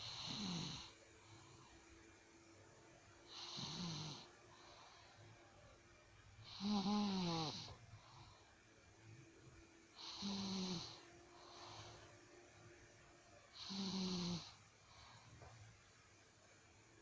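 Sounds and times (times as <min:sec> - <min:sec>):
man snoring: 0:00.0 - 0:01.0, 0:03.3 - 0:04.3, 0:06.4 - 0:07.8, 0:10.0 - 0:12.0, 0:13.6 - 0:14.6.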